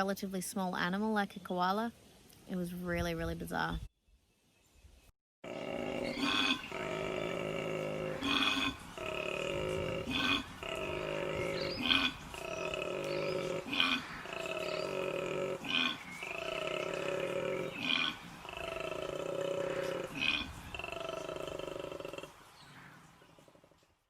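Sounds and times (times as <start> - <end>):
koala bellowing: 5.5 - 22.4
koala gasping: 5.5 - 22.4.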